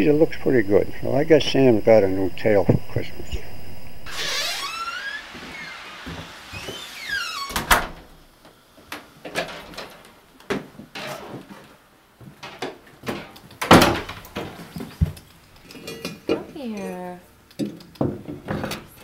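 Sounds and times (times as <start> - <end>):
short falling squeal: 4.0 - 7.6.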